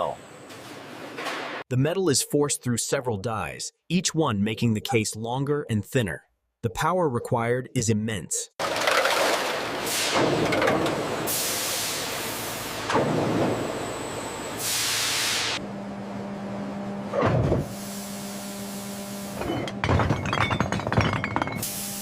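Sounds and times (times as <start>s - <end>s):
hissing air release: 11.3s - 12.9s, 14.6s - 15.6s.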